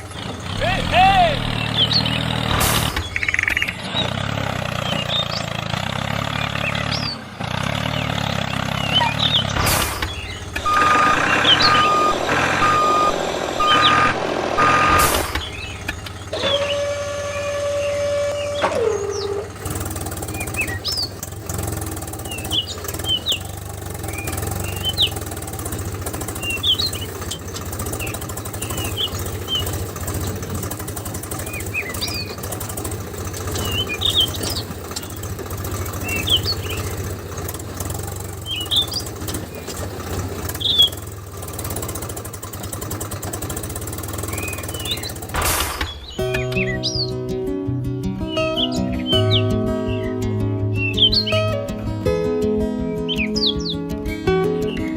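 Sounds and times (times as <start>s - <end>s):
small birds chirping: 0.0s - 14.2s, 15.0s - 45.3s, 45.9s - 47.4s, 48.2s - 51.6s, 52.8s - 54.9s
low hum: 9.5s - 17.6s
held tone dropping in pitch: 10.6s - 19.4s.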